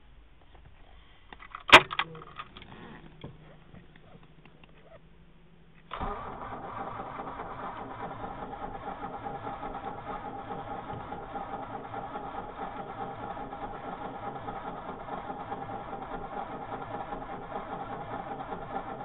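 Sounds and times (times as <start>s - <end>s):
faint low hum: 0.0s - 8.8s
starter cranking engine: 5.9s - 19.0s.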